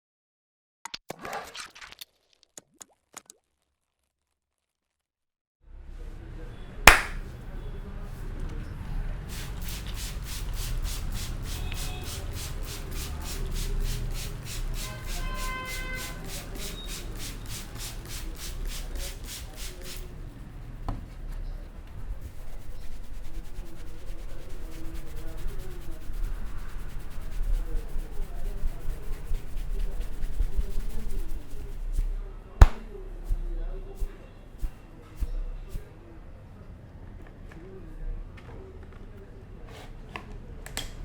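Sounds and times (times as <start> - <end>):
hands rubbing hair and scalp: 6.9 - 7.2, 22.2 - 32.9.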